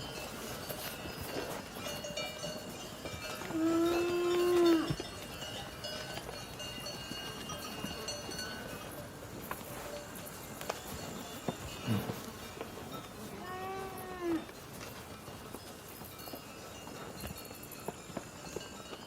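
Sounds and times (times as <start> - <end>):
faint high ringing tones: 0.0 - 19.0
cow mooing: 3.5 - 4.9, 13.4 - 14.5.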